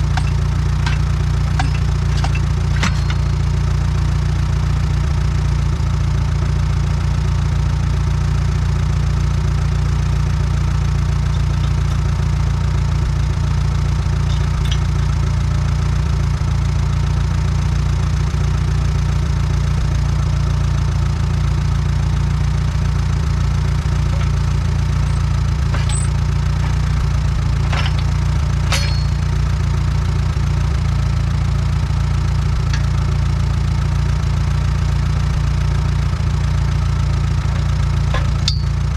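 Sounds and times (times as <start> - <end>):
metallic clanks and knocks: 0.0 - 3.8, 11.2 - 12.3, 13.7 - 15.2, 23.7 - 29.5, 32.6 - 33.1, 37.3 - 38.9
tractor engine idling: 0.0 - 38.9.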